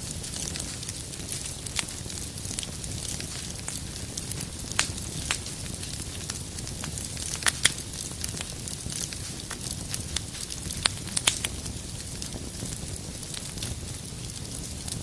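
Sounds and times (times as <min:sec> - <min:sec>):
fire flames rumbling and hissing: 0:00.0 - 0:15.0
firewood crackling and popping: 0:00.0 - 0:15.0.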